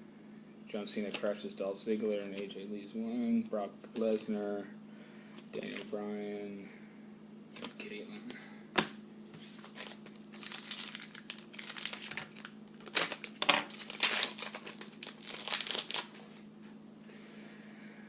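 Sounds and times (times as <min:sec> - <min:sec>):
steady low hum: 0:00.0 - 0:18.0
foil wrapper crinkling and tearing: 0:09.5 - 0:16.4.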